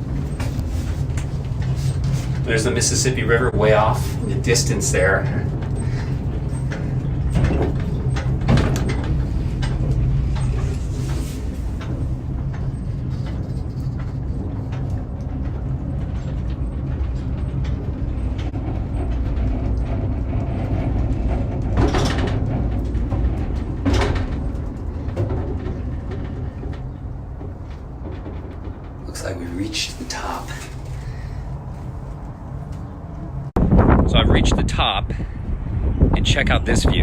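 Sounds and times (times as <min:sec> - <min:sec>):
funicular car rumble: 0:00.0 - 0:37.0.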